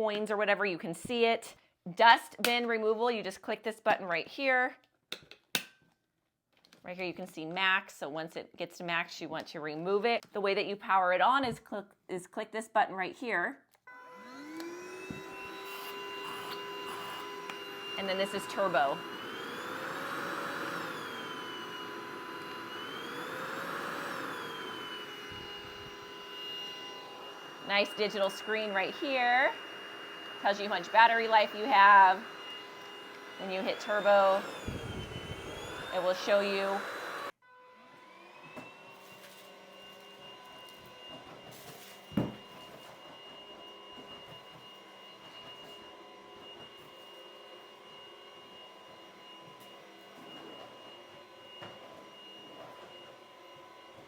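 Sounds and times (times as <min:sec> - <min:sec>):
stick vacuum cleaner motor whine: 0:13.9 - 0:54.0.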